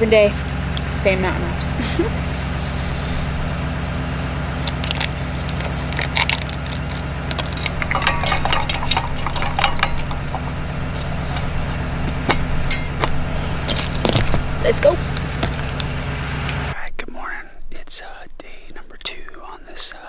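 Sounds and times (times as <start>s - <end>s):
vehicle engine running: 0.0s - 16.9s
metallic clinks and rattles: 4.6s - 16.2s.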